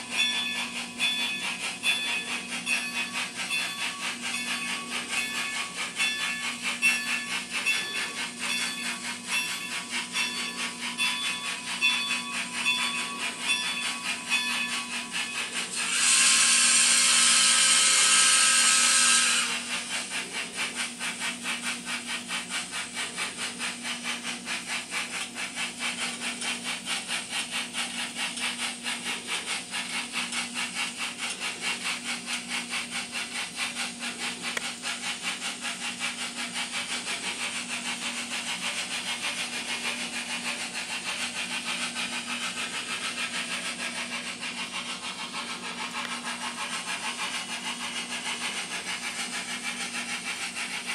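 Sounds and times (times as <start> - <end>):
steam exhaust chuffing: 0.0 - 50.9
steam locomotive whistle: 7.6 - 20.2.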